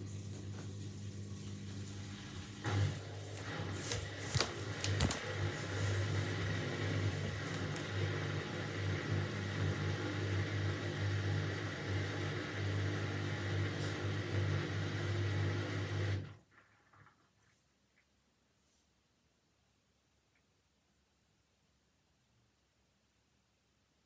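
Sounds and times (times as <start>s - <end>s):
washing machine humming: 0.0s - 16.7s.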